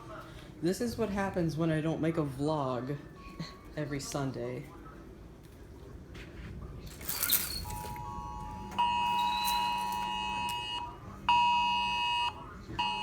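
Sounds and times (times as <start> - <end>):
emergency alert tones: 7.6 - 13.0.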